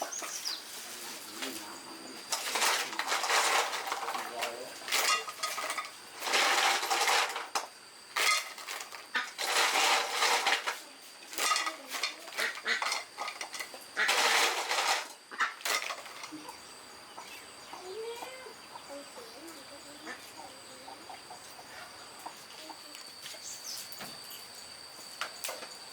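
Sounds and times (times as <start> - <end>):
small birds chirping: 0.0 - 2.3, 16.3 - 25.6
pots and utensils clattering: 2.2 - 16.5.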